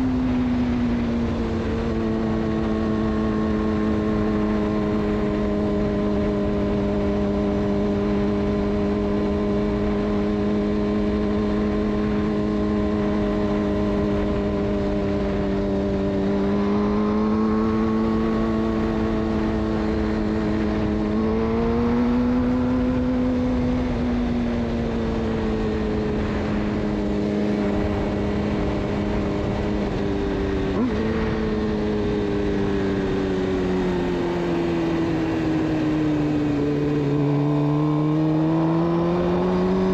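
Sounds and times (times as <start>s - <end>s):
motorcycle engine revving: 0.0s - 39.9s
wind and road noise: 0.0s - 39.9s.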